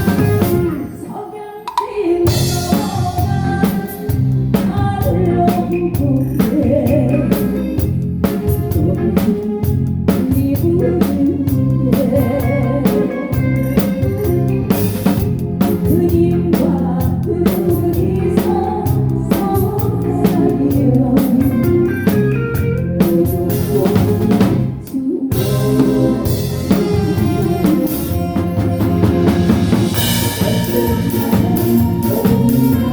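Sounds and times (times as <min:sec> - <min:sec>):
live band playing: 0:00.0 - 0:32.9
bass drum: 0:02.3 - 0:05.4, 0:25.4 - 0:32.9.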